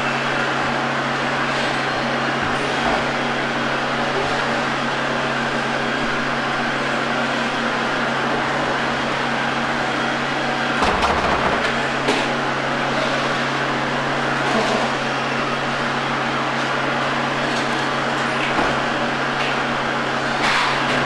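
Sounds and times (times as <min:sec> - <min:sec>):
knocks: 0:10.8 - 0:11.8
mechanical whir: 0:10.8 - 0:12.1.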